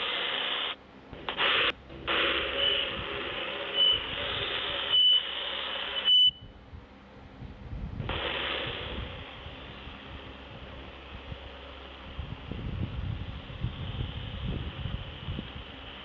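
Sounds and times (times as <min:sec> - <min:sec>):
loud steady hiss: 0:00.0 - 0:06.1, 0:08.0 - 0:16.0
short high electronic beeps: 0:02.4 - 0:02.9.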